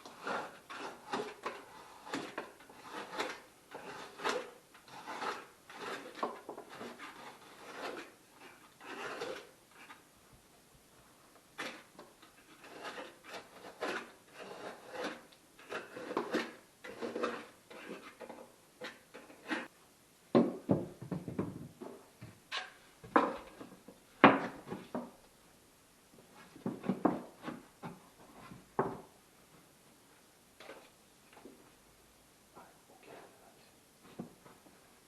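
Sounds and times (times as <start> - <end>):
rubbing and scraping of materials: 0.0 - 10.1, 11.6 - 19.7, 21.9 - 25.2, 26.2 - 29.1.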